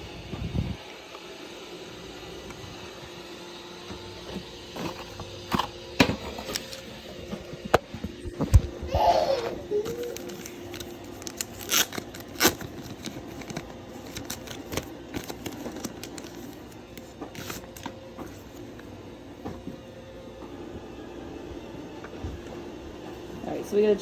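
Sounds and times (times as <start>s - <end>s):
plastic parts clicking and rustling: 4.8s - 8.7s, 9.8s - 18.0s.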